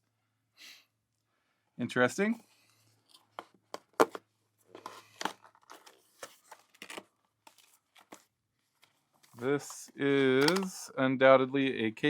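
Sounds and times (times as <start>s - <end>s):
packaging rustling and crinkling: 4.0s - 10.8s
packaging clicks: 9.3s - 10.9s.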